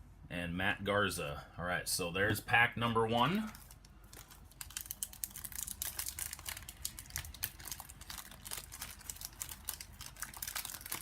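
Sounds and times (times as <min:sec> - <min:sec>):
wrapper crinkling and tearing: 0:03.3 - 0:11.0.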